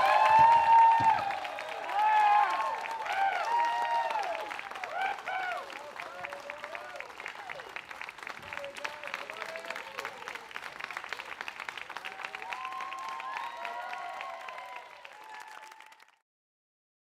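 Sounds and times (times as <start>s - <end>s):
audience applauding and cheering: 0.0s - 16.2s.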